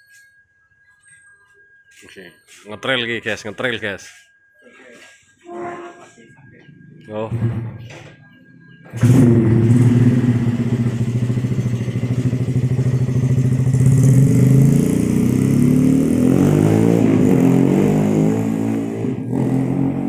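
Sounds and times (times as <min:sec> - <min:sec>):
motorcycle engine running and revving: 0:07.3 - 0:08.0, 0:08.9 - 0:20.0.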